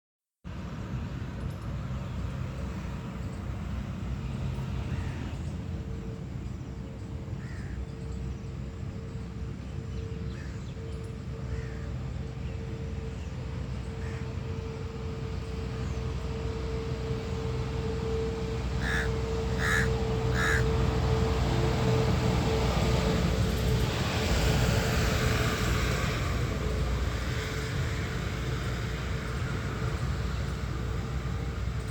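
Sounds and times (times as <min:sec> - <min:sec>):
crows cawing: 0:07.4 - 0:07.8, 0:14.0 - 0:14.2, 0:18.8 - 0:20.8.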